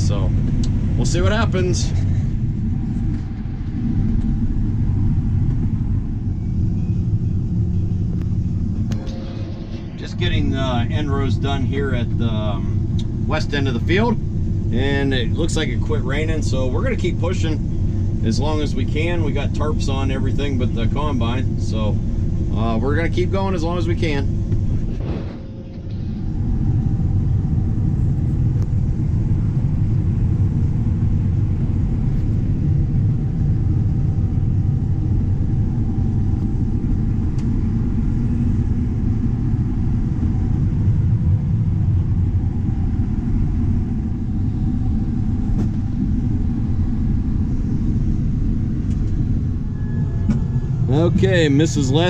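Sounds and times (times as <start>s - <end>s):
combine harvester rumbling: 0.0s - 52.0s.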